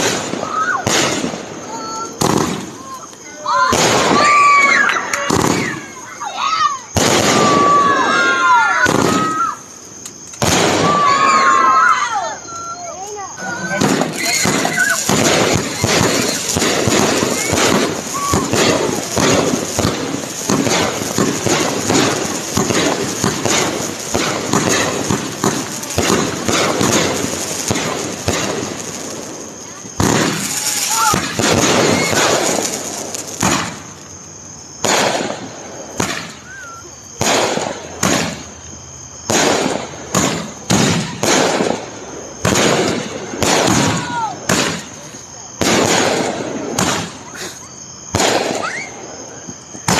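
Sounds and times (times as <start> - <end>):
fireworks bangs and crackles: 0.0 - 49.9.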